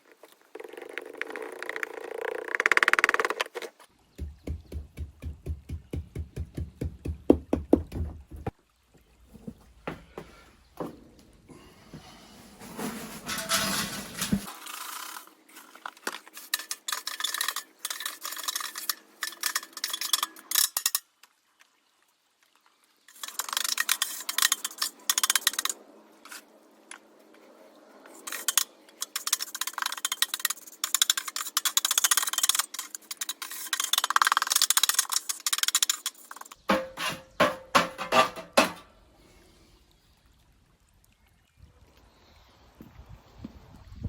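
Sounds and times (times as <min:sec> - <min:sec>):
scraping and rubbing on hard material: 0:12.2 - 0:15.1.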